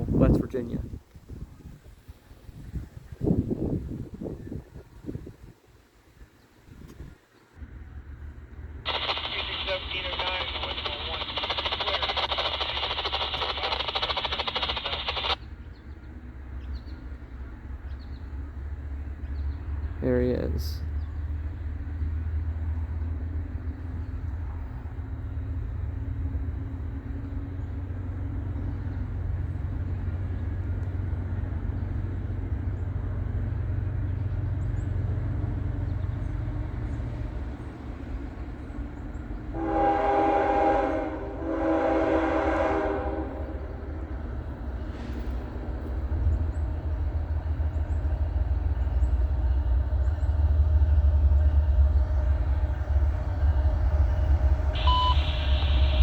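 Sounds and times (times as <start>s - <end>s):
diesel locomotive engine rumble: 0.0s - 56.0s
train horn blasts: 39.5s - 44.0s, 54.5s - 56.0s.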